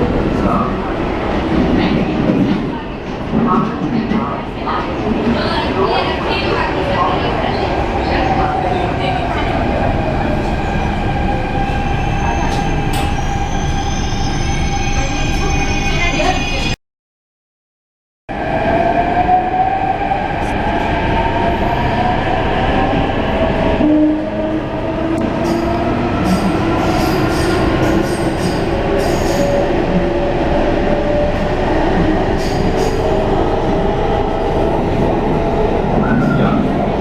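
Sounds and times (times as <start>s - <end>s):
train wheels on rail: 24.9s - 37.0s.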